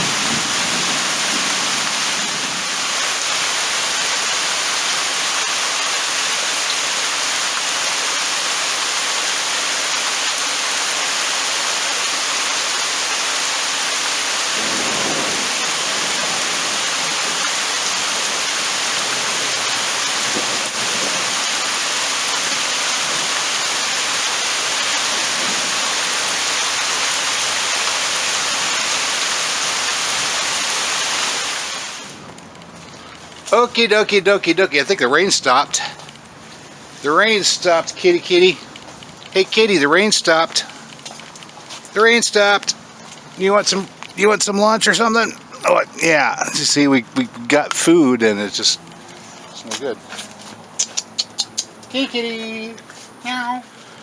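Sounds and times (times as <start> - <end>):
thunder rumbles: 0.0 - 4.2, 14.5 - 24.2
heavy rain falling: 0.0 - 50.8.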